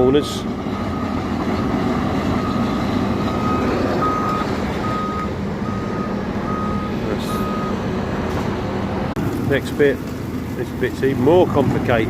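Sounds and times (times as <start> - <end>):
reversing alarm beeping: 0.0 - 1.3, 2.3 - 7.8
construction machinery engines: 0.0 - 12.0.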